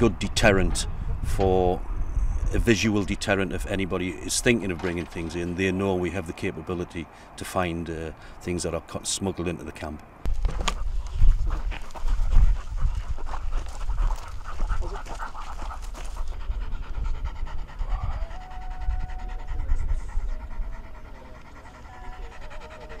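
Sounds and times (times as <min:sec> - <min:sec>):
dog panting: 0:10.6 - 0:23.0.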